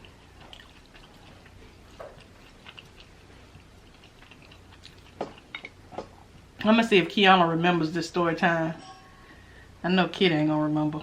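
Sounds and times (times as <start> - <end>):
person chewing with mouth smacks: 0.0 - 6.5.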